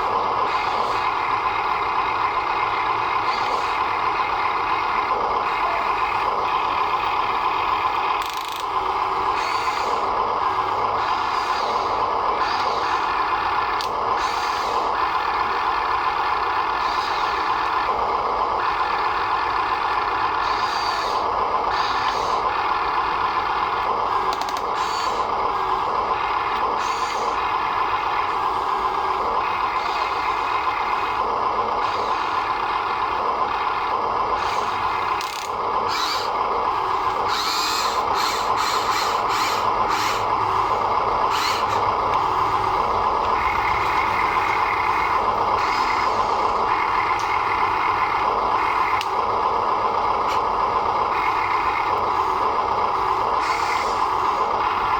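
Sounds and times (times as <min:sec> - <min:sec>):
small electric motors whining: 0:00.0 - 0:54.9
scattered clicks: 0:24.3 - 0:24.8, 0:34.5 - 0:36.4, 0:46.8 - 0:47.5, 0:48.6 - 0:49.3.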